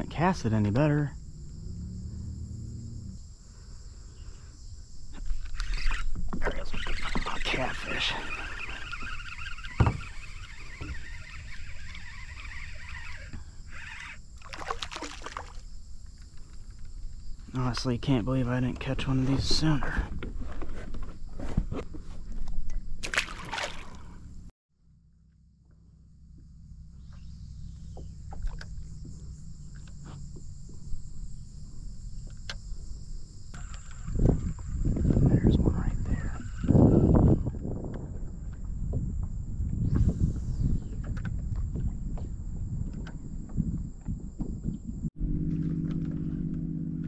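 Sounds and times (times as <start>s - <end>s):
low constant rumble: 0.0s - 14.5s, 23.6s - 39.8s, 40.8s - 47.0s
insects droning: 0.0s - 47.0s
water sloshing at a kayak: 5.1s - 17.2s, 20.0s - 24.5s, 27.8s - 30.8s
splashy clatter: 14.4s - 15.6s, 23.0s - 24.0s.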